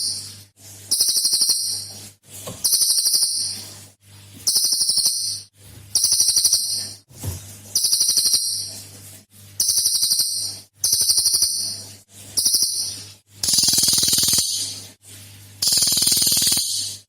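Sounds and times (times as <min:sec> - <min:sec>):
songbird trilled bursts: 0:12.4 - 0:14.7, 0:15.6 - 0:17.0.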